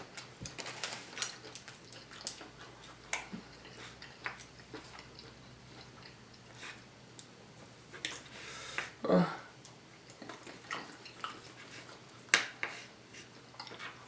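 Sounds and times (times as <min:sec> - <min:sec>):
person chewing: 0:00.6 - 0:07.2.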